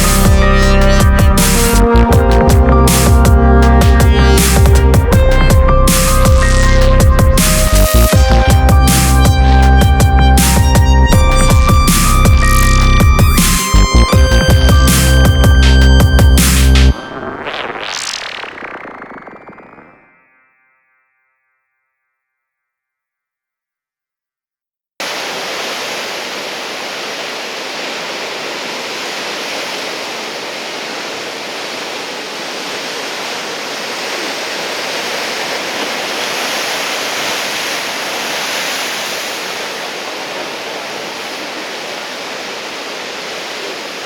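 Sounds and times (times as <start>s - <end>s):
ocean surf breaking on shore: 13.4s - 20.2s, 25.0s - 44.0s.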